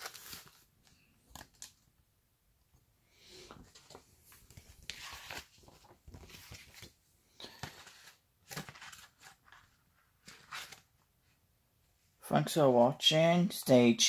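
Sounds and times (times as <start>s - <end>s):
plastic wrappers crinkling: 0.0s - 0.7s.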